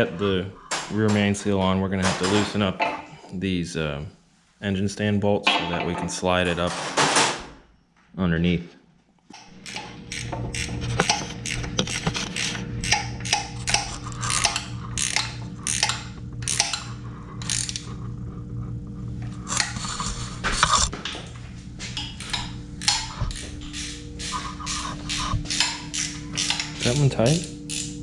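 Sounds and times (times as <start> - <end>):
steady low hum: 9.3 - 28.0
socket ratchet clicking: 9.6 - 17.8.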